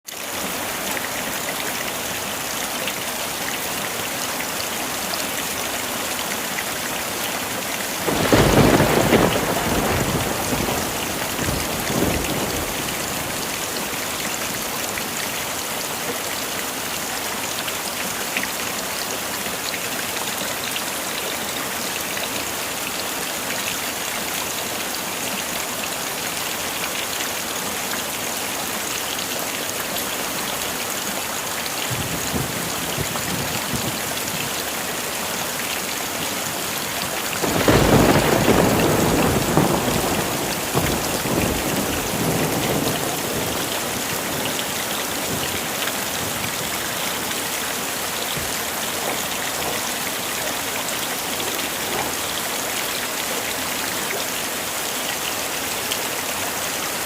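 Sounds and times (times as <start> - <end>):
heavy rain: 0.0 - 57.0
thunderclap rumbling: 8.0 - 13.9, 31.9 - 34.1, 37.4 - 46.6.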